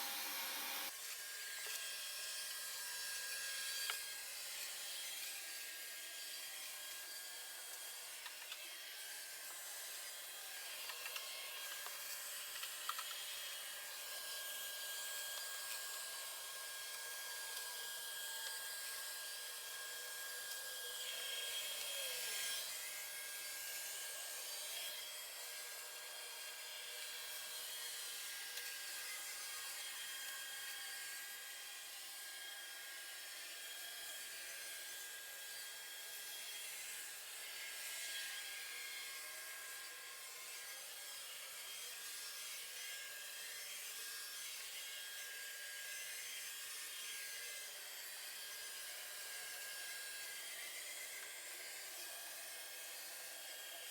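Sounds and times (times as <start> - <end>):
robot vacuum cleaner whine: 0.0 - 31.2.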